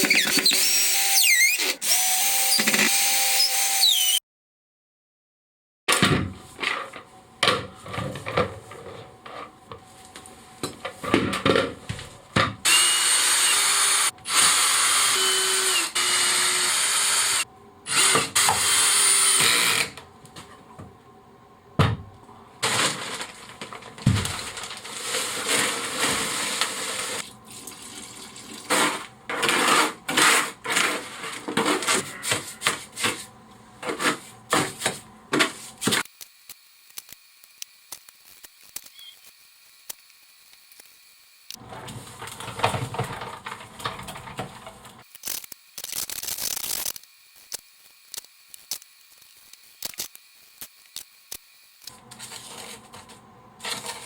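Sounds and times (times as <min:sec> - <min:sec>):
electric power tool running: 0:12.6 - 0:19.8.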